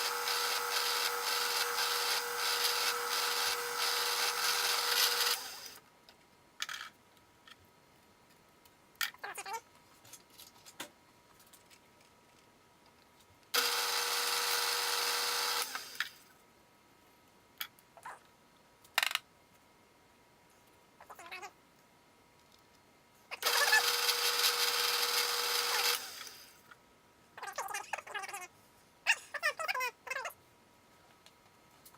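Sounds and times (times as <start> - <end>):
drill bit cutting steel: 0.0 - 5.8, 13.6 - 16.2, 23.4 - 26.5.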